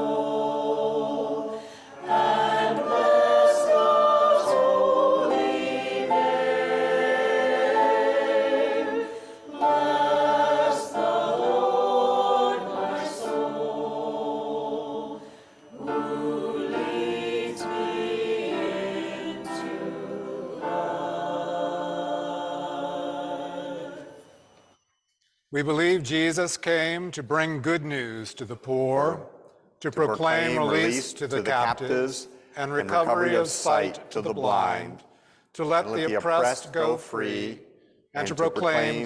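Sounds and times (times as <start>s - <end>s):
choir singing a hymn: 0.0s - 24.7s, 30.2s - 35.0s, 35.6s - 37.6s, 38.2s - 39.0s
singers breathing: 1.5s - 2.0s, 9.0s - 9.5s, 15.2s - 15.8s, 35.0s - 35.6s.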